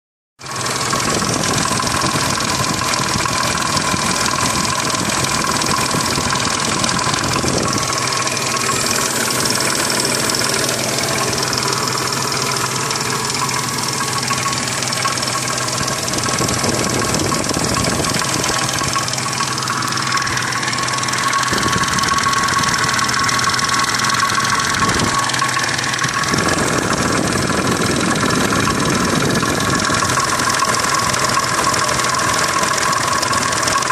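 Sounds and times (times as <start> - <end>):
car engine running: 0.4 - 33.9
steady high tone: 5.7 - 23.5.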